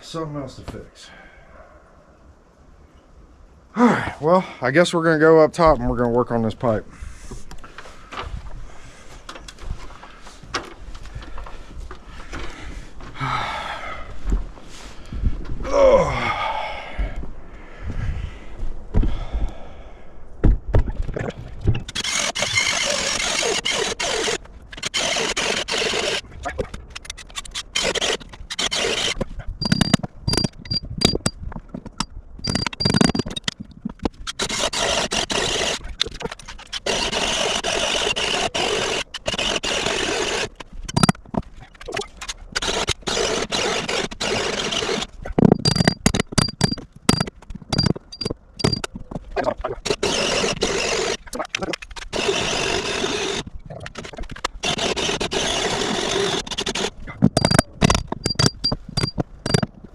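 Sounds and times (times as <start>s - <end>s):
cordless drill boring: 21.9s - 26.2s, 27.4s - 31.3s, 32.0s - 33.5s, 34.3s - 35.9s, 36.5s - 41.2s, 42.5s - 48.9s, 49.8s - 51.3s, 51.9s - 59.7s.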